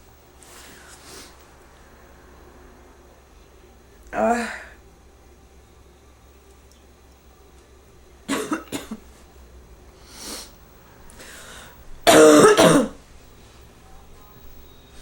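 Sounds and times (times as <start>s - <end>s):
person coughing: 8.3s - 9.0s, 12.1s - 13.0s.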